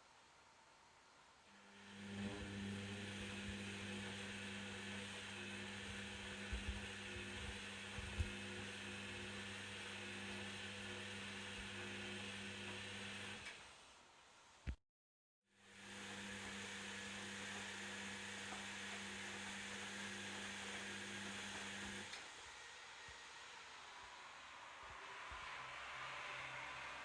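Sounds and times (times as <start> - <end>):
washing machine running: 1.7 - 13.5, 15.8 - 22.4.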